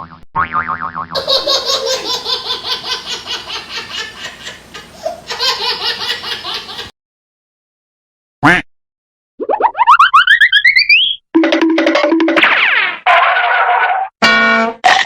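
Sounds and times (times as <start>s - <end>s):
wobbling boing sound effect: 0.4s - 1.1s, 11.4s - 12.6s, 14.2s - 15.0s
laughter: 1.2s - 6.9s.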